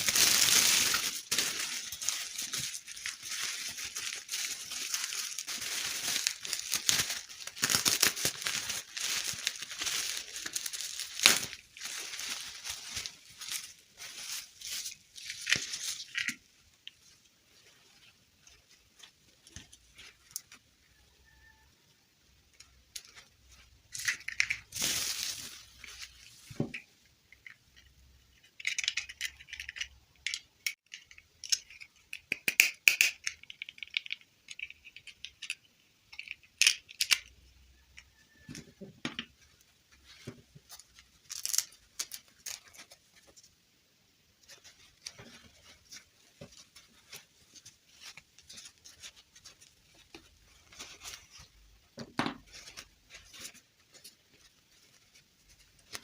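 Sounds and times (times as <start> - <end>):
small objects handled by hand: 0.0 - 21.7, 22.4 - 56.0.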